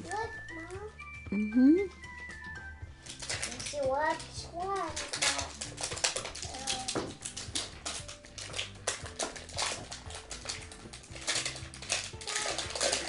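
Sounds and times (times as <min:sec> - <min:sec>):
plastic packaging crinkling: 0:03.0 - 0:13.0.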